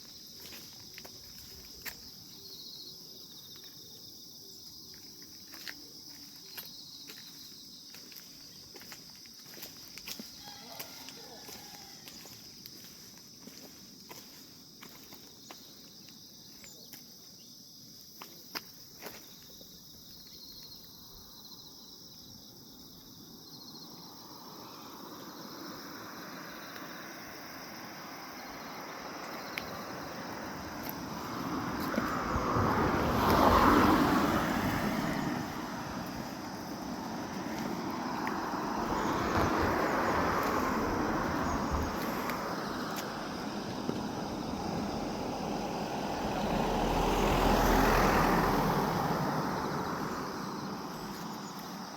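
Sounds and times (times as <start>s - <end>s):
crickets trilling: 0.0s - 51.9s
vehicle passing: 24.2s - 51.9s.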